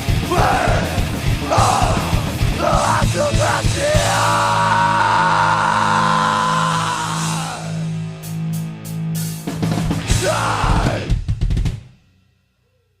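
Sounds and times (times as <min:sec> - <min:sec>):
fast drum hits: 0:00.0 - 0:04.4.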